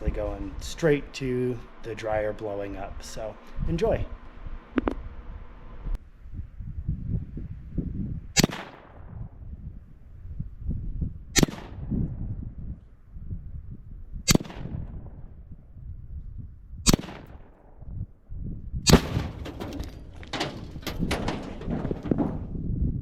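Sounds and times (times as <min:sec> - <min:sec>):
wind rumbling on microphone: 0:00.0 - 0:23.0
gunshots with echo: 0:08.4 - 0:09.1, 0:11.4 - 0:11.9, 0:16.9 - 0:17.6
sharp cracks: 0:08.4 - 0:09.2, 0:11.4 - 0:12.0, 0:14.3 - 0:15.2, 0:16.9 - 0:17.8, 0:18.9 - 0:22.5
explosion boom: 0:18.9 - 0:22.6.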